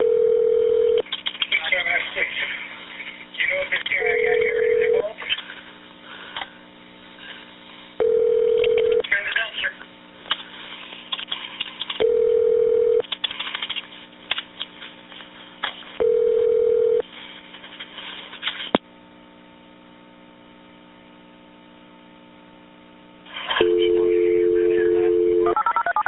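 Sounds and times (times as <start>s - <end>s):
dial tone: 0.0s - 1.0s, 4.0s - 5.0s, 8.0s - 9.0s, 12.0s - 13.0s, 16.0s - 17.0s, 23.6s - 26.0s
steady telephone tone: 0.0s - 1.0s, 4.0s - 5.0s, 8.0s - 9.0s, 12.0s - 13.0s, 16.0s - 17.0s, 23.6s - 26.0s
telephone line click: 8.4s - 9.0s.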